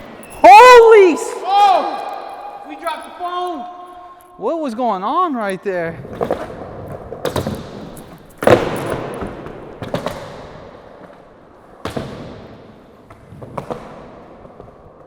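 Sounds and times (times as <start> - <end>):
skateboard wheels rolling rumble: 5.9 - 15.0
skateboard clacks on concrete: 6.0 - 15.0.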